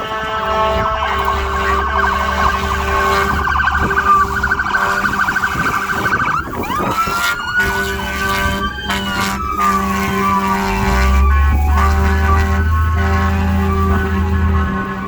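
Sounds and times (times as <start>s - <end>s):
emergency siren: 0.0s - 15.0s
low hum and rumble: 0.5s - 6.2s.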